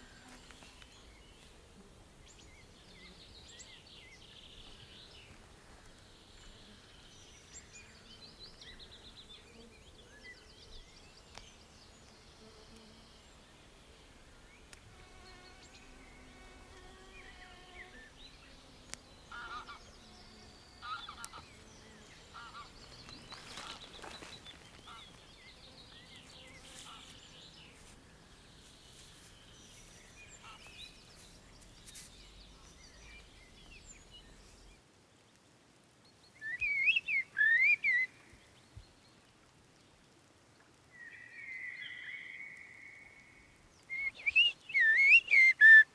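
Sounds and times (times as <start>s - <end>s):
faint outdoor background: 0.0s - 45.9s
bird calls: 15.3s - 27.9s, 36.4s - 38.3s, 41.0s - 45.9s
loud warbling whistles: 44.0s - 45.9s.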